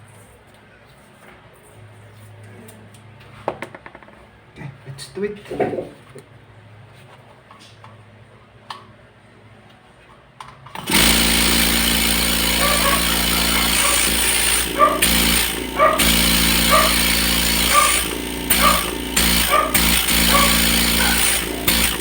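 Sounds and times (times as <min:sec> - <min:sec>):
air compressor hum with hiss: 0:10.8 - 0:22.0.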